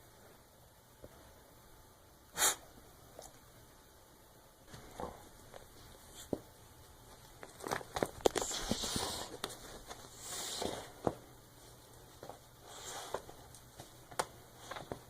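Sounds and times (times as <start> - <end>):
rustling: 4.7 - 15.0.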